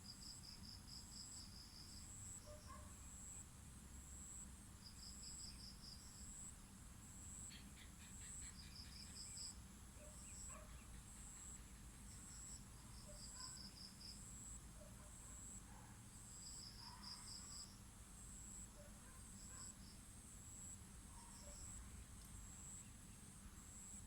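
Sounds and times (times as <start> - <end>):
crickets chirping: 15.5 - 24.0.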